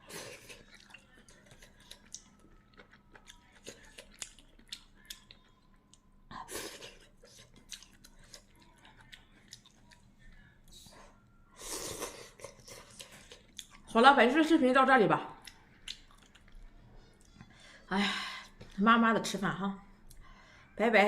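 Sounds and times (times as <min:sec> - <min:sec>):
person chewing food: 0:00.0 - 0:13.9, 0:15.4 - 0:17.7.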